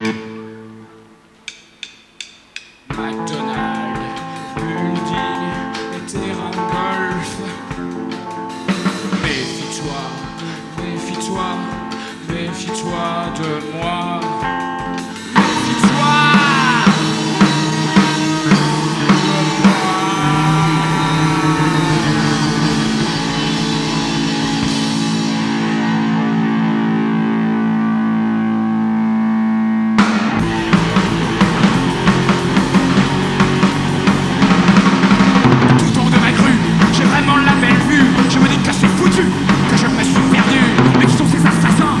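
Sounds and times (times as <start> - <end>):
electric guitar: 0.0 - 1.9, 2.8 - 42.0
drums: 0.0 - 28.9, 29.9 - 42.0
punk rock band playing: 0.0 - 42.0.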